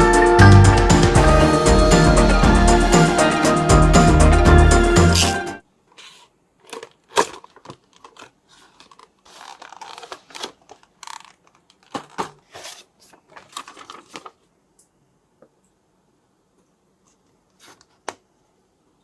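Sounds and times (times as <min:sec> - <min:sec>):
packaging crinkling and tearing: 0:06.0 - 0:14.5.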